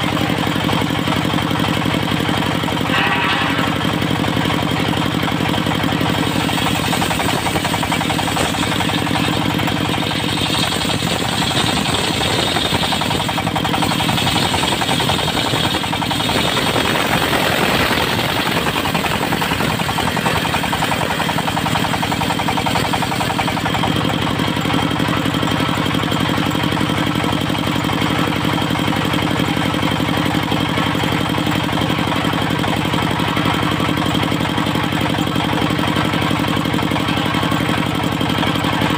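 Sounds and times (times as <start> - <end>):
mobile sawmill engine running: 0.0 - 38.9
saw blade hissing through timber: 6.1 - 16.5.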